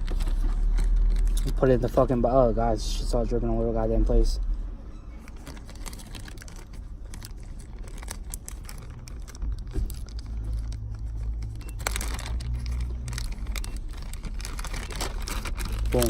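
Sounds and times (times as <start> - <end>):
plastic bag crinkling: 0.0 - 2.0, 5.2 - 16.0.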